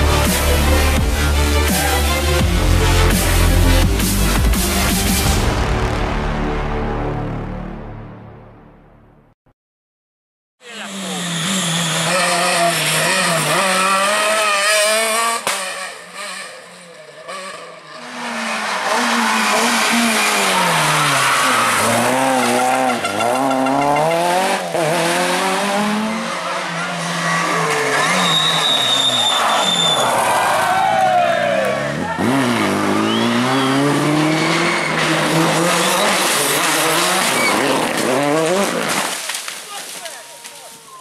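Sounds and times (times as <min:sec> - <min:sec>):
rally car engine revving: 0:10.6 - 0:39.2.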